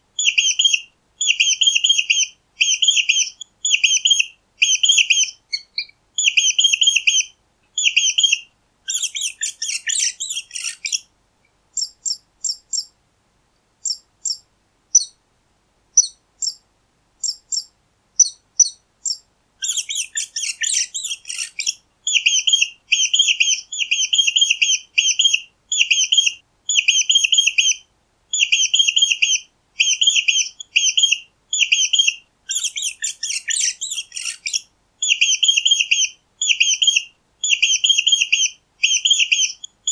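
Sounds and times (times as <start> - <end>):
mice squeaking: 0.2 - 7.2, 7.8 - 11.0, 17.2 - 27.8, 28.4 - 39.9.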